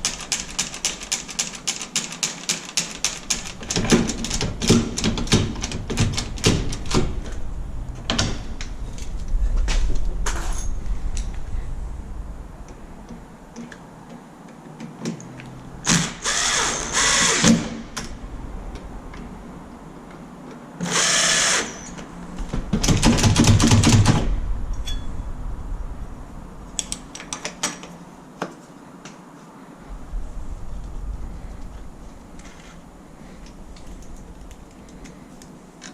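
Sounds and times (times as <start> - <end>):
power drill whining: 15.9 - 17.6, 20.8 - 22.0.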